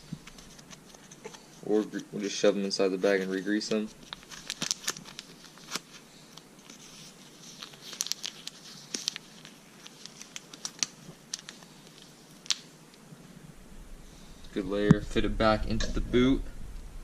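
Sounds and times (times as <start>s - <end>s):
plastic bag crinkling: 3.3s - 12.6s.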